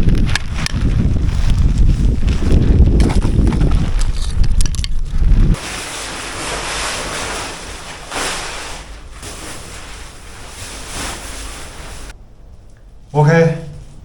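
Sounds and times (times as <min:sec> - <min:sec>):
strong wind rushing: 0:00.0 - 0:05.7
wind buffeting microphone: 0:00.0 - 0:05.7.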